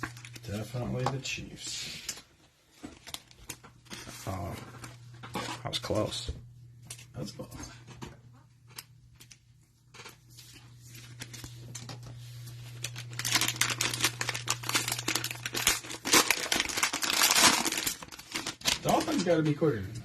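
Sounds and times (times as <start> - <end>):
foil wrapper crinkling and tearing: 0.0 - 0.7, 2.8 - 5.0, 8.7 - 19.5.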